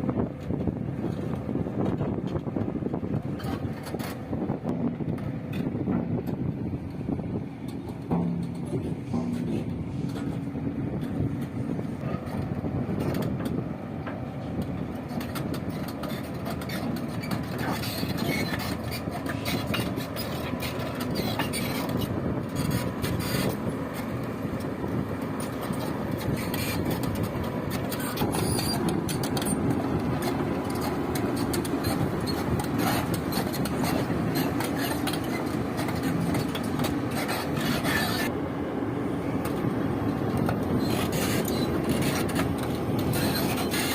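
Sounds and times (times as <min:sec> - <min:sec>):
heavy diesel machinery running: 0:00.0 - 0:43.9
rattling and clattering: 0:07.7 - 0:24.0.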